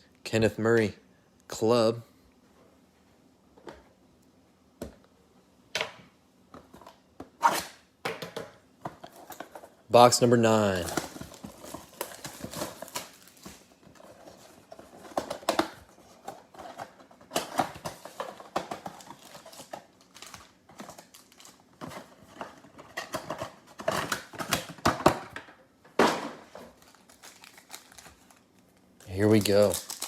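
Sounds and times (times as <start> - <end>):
plastic wrap crinkling and tearing: 10.6 - 15.1, 18.9 - 21.8, 26.7 - 30.0.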